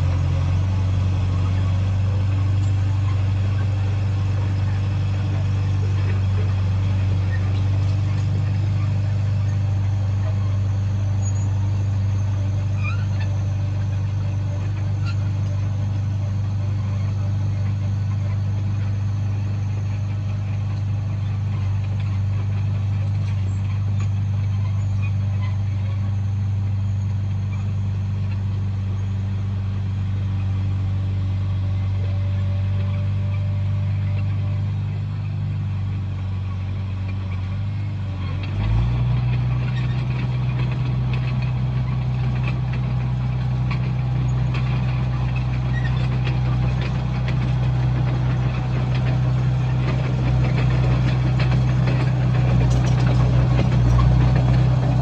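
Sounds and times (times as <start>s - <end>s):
bulldozer diesel engine humming: 0.0s - 55.0s.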